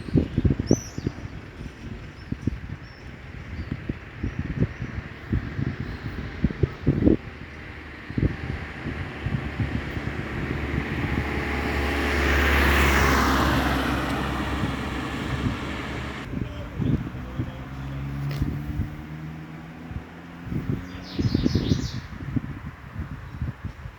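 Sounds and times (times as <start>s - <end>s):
low rumble: 2.1s - 21.2s
vehicle driving past: 4.1s - 16.3s, 16.9s - 21.5s.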